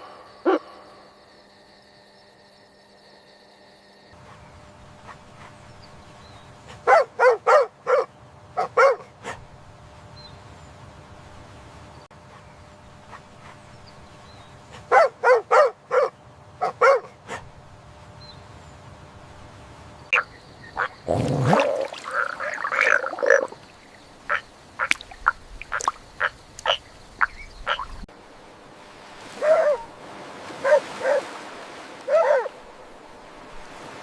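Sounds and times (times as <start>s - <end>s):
dog barking: 6.8s - 9.4s, 14.8s - 17.4s, 29.4s - 29.9s, 30.6s - 31.3s, 32.1s - 32.5s.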